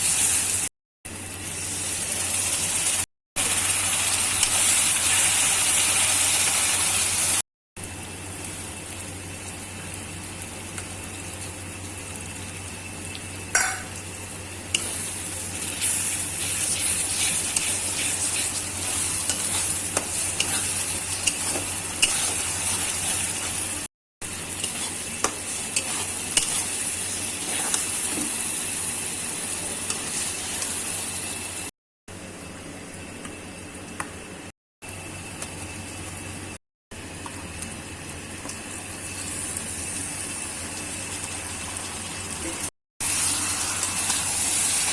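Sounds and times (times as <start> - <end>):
chicken sizzling in a pan: 1.4 - 31.7, 38.6 - 44.9
spatula scraping a pan: 14.8 - 23.7, 24.6 - 28.3.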